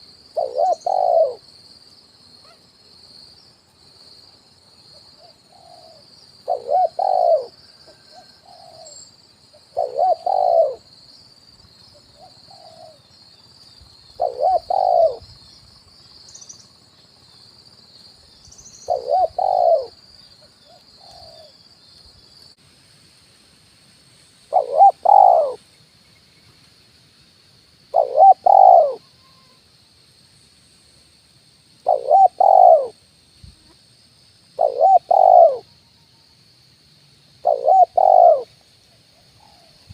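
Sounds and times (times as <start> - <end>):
steady high hiss: 0.0 - 39.9
dove cooing: 0.3 - 1.4, 5.2 - 9.0, 9.7 - 10.9, 12.2 - 13.0, 14.2 - 15.3, 18.9 - 20.0, 20.7 - 21.5, 24.5 - 25.6, 27.9 - 29.1, 31.8 - 33.0, 34.6 - 35.7, 37.4 - 38.5.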